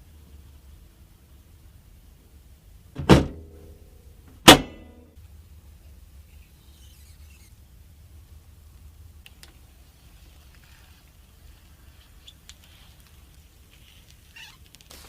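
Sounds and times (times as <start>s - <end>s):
sharp ringing knocks: 4.4s - 5.1s.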